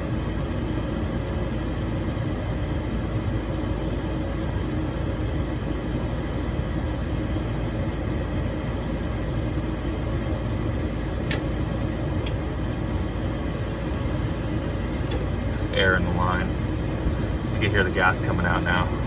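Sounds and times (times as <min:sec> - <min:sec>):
gas furnace humming and rumbling: 0:00.0 - 0:19.0.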